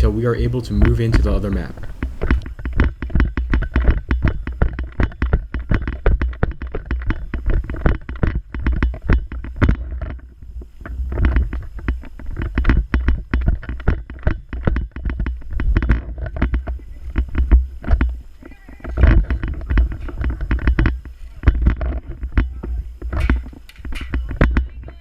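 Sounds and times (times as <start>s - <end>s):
running footfalls: 0.0s - 2.4s.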